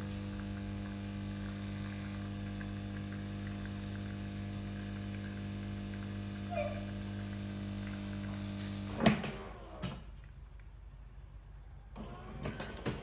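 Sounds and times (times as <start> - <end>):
coffee machine humming: 0.0 - 9.9
machine cutting off with a clunk: 7.8 - 10.1.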